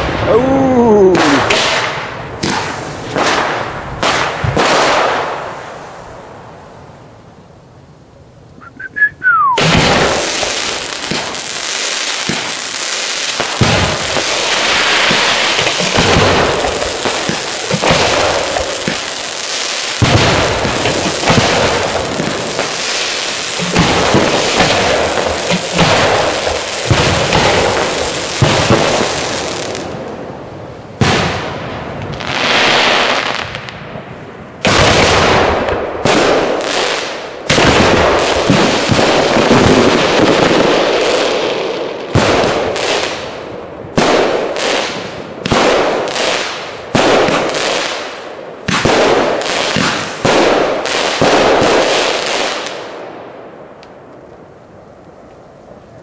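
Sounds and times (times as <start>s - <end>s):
fireworks crackling and bangs: 0.0s - 7.2s, 8.6s - 56.0s
fireworks hiss: 9.6s - 29.9s, 46.1s - 52.8s.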